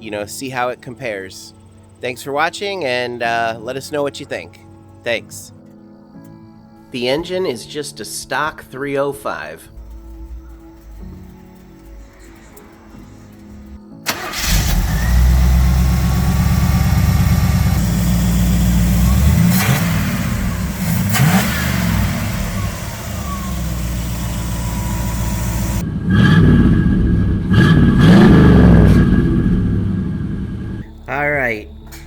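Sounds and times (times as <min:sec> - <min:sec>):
car engine idling and revving: 0:09.8 - 0:31.0
car engine starting: 0:09.8 - 0:31.2.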